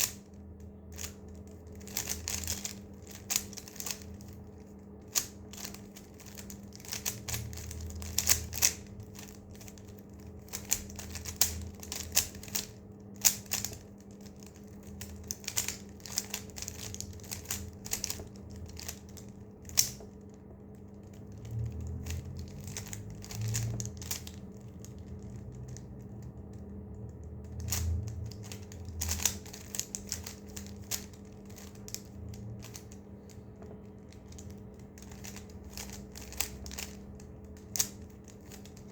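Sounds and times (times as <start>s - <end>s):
faint steady hum: 0.0s - 38.9s.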